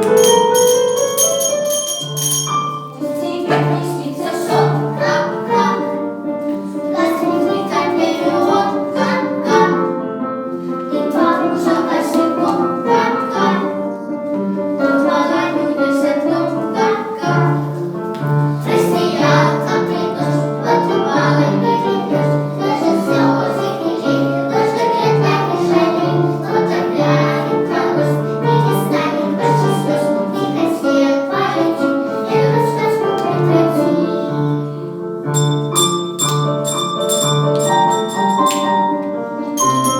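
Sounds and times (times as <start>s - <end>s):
instrumental accompaniment with beat: 0.0s - 3.0s, 35.3s - 39.9s
young children singing: 2.9s - 39.9s.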